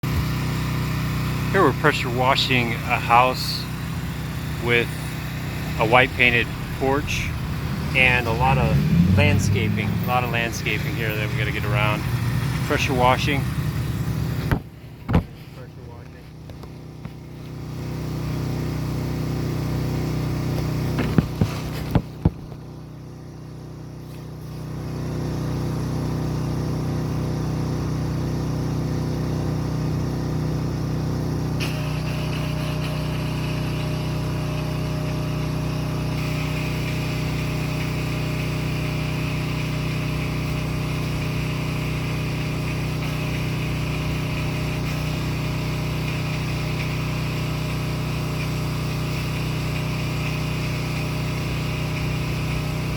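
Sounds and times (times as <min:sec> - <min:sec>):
pressure washer engine running: 0:00.0 - 0:52.9
water spray hissing: 0:00.2 - 0:14.6, 0:31.6 - 0:52.9.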